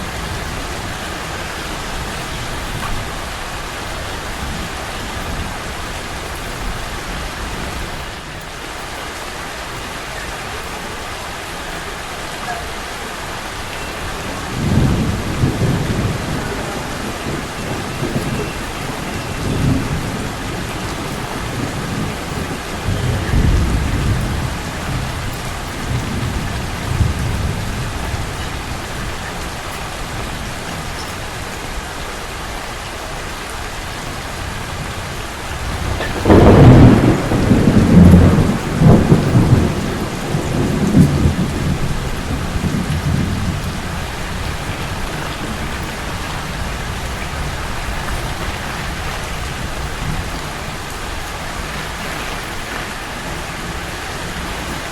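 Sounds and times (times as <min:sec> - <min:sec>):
rain hissing: 0:00.0 - 0:54.9
thunder rumbling: 0:00.0 - 0:54.9
loud thunder peal: 0:14.1 - 0:29.2, 0:34.7 - 0:52.8.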